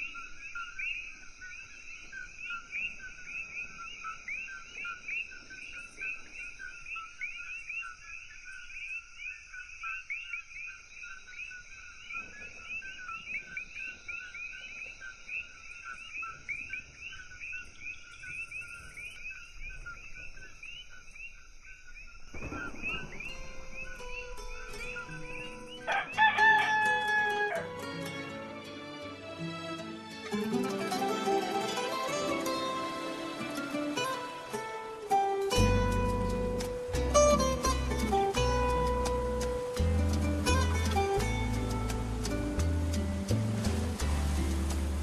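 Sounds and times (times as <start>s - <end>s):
chorus of frogs calling: 0.0s - 27.8s.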